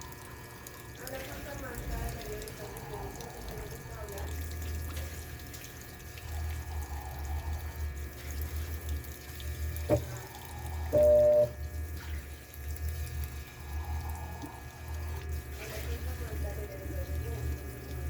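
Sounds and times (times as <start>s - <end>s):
water running into drum: 0.0s - 18.0s
low pulsing hum: 2.0s - 18.0s
short steady beep: 11.0s - 11.6s.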